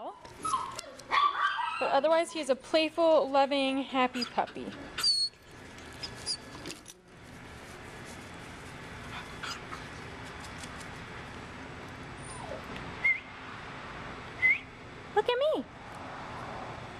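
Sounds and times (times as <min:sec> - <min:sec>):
puppy whimpering: 0:00.0 - 0:02.4, 0:04.1 - 0:05.4, 0:06.0 - 0:06.6, 0:09.2 - 0:09.9, 0:12.2 - 0:12.8.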